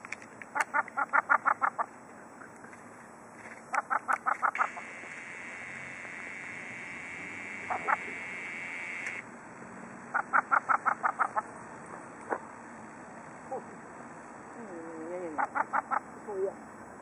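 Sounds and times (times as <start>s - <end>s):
gull laughing calls: 7.6s - 8.3s.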